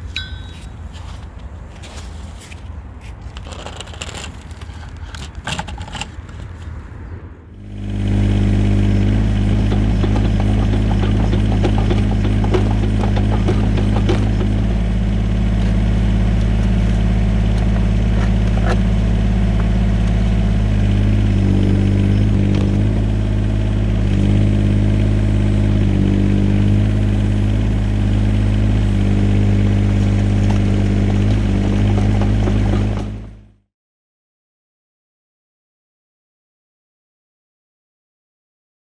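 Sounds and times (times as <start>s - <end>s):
higher hum: 0.0s - 1.0s, 7.6s - 33.4s
diesel engine running: 7.6s - 33.6s.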